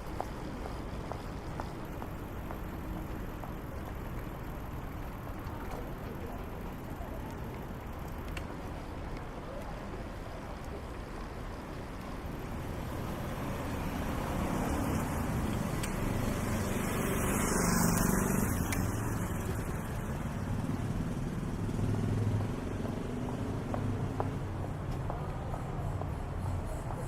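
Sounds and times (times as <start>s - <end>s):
city noise hum: 0.0s - 27.0s
vehicle passing close by: 12.6s - 24.8s.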